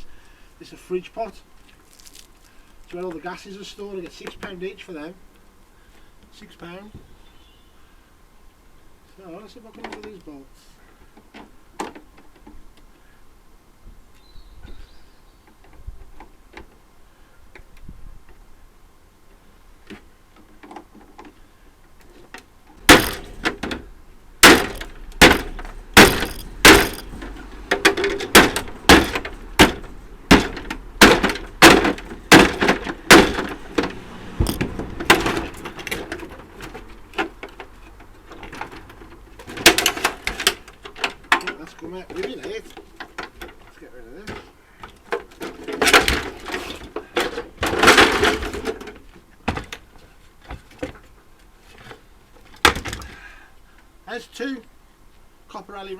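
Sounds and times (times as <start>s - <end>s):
loud sharp strikes on metal: 22.9s - 23.4s, 24.4s - 27.2s, 27.8s - 33.6s.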